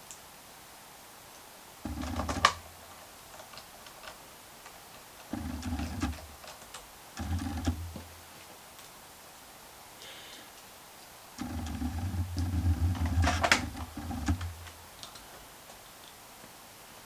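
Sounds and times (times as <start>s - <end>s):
laptop clicking and knocking: 1.9s - 2.9s, 5.3s - 8.2s, 11.4s - 14.8s.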